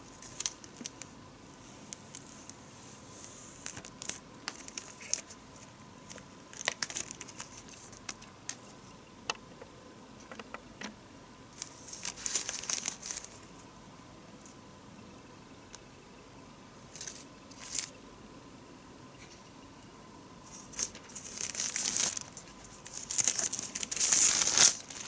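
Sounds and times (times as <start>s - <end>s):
packaging crinkling and tearing: 6.1s - 8.3s, 11.6s - 13.4s, 17.0s - 17.9s, 20.5s - 25.0s
small clicks and taps: 9.3s - 11.0s.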